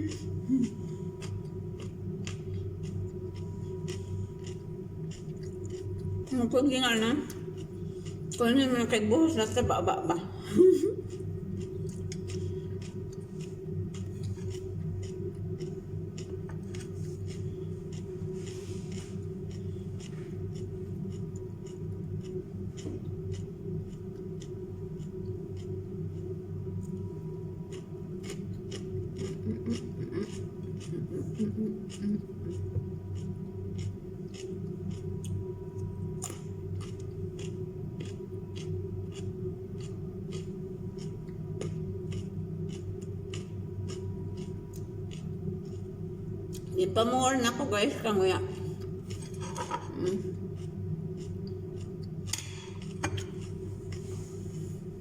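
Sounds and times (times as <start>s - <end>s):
crunchy vegetables being chewed: 0.0s - 6.6s, 11.0s - 46.8s, 48.8s - 54.8s
steady low hum: 0.0s - 55.0s.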